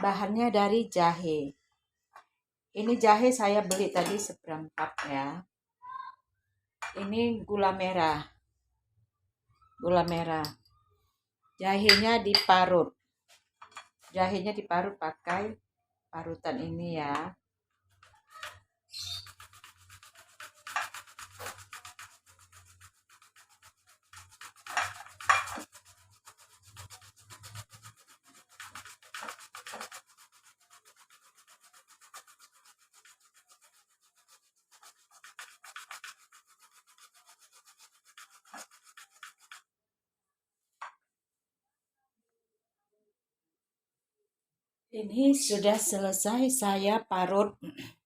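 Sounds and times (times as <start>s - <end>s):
ginger grating on a grater: 17.9s - 39.7s.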